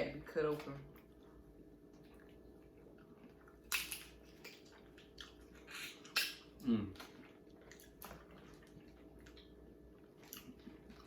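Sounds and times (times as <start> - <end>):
wet crunches of eating crab: 2.0 - 11.0
person humming mm: 6.6 - 7.0.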